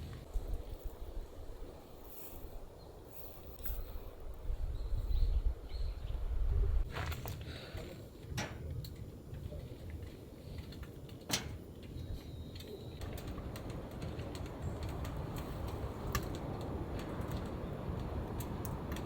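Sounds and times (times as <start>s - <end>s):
wood stove fire crackling: 7.2s - 19.0s.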